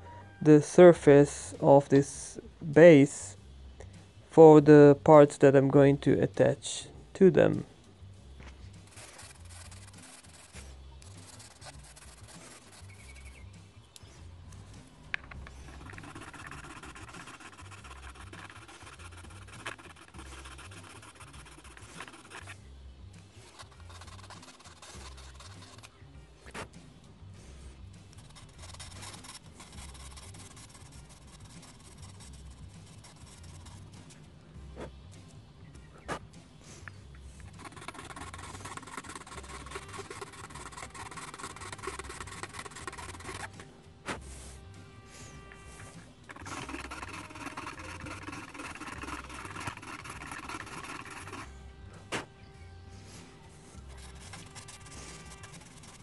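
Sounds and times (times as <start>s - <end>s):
quiet background music: 0.0s - 56.0s
scratchy rubbing on metal: 8.7s - 13.6s, 14.5s - 26.8s, 27.8s - 34.9s, 37.4s - 56.0s.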